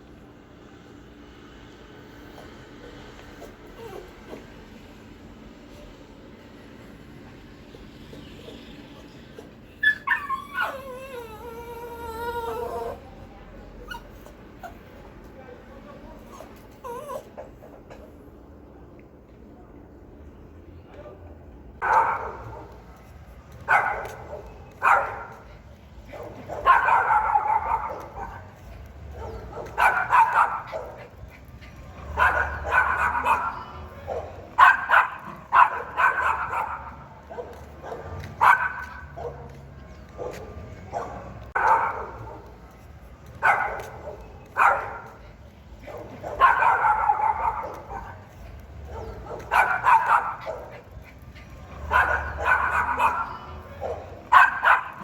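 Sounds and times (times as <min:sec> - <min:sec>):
dog barking rapidly: 0:26.5 - 0:28.4, 0:29.2 - 0:30.9, 0:32.1 - 0:33.6, 0:34.6 - 0:39.1, 0:46.0 - 0:48.1, 0:49.0 - 0:50.7, 0:51.8 - 0:55.0.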